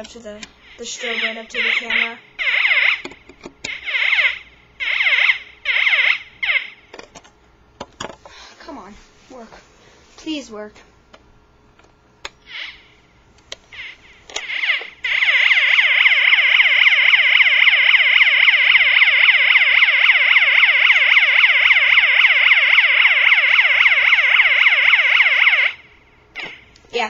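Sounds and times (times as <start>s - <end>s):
electronic alarm siren tone: 1.0s - 3.1s, 3.7s - 6.8s, 13.8s - 25.8s.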